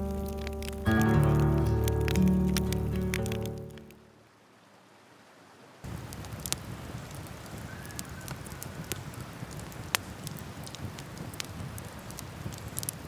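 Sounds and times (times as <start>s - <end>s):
campfire crackling and popping: 0.0s - 4.0s, 5.8s - 13.0s
intro music: 0.0s - 4.0s
river water rushing: 0.0s - 7.6s.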